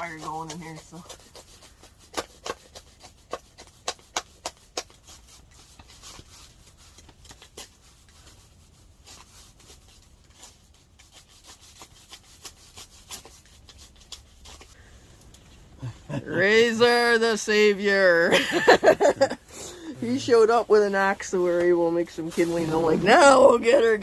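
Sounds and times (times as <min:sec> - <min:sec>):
blade scraping wood: 0:18.6 - 0:24.0.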